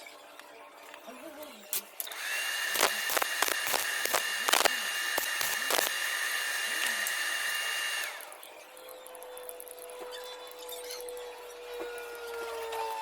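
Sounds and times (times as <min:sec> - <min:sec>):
power tool whining: 0:02.0 - 0:08.5.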